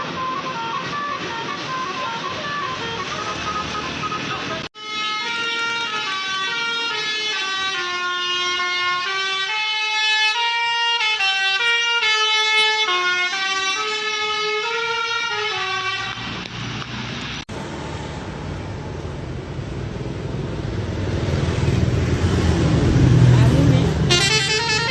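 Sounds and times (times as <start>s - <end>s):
bus air horn playing tune: 0.0s - 16.4s, 24.0s - 24.9s
low vehicle rumble: 15.9s - 24.9s.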